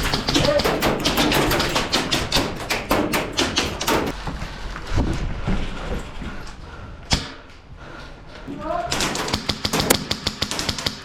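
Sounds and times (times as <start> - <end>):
airsoft gun shots: 0.0 - 4.1, 8.9 - 11.0.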